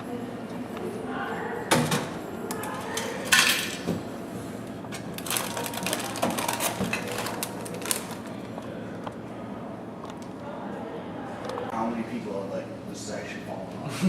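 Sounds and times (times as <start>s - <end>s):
vending machine clicking and clunking: 1.7s - 4.1s.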